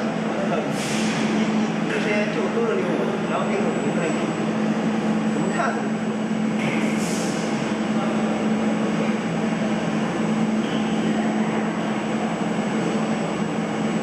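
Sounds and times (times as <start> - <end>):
industrial machinery droning: 0.0 - 14.0
hiss: 0.7 - 1.4, 6.7 - 7.6.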